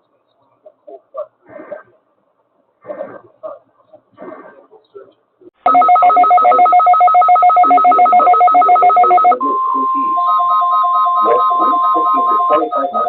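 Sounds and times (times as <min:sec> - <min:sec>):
rapid two-pitch beeping: 0:05.7 - 0:13.0.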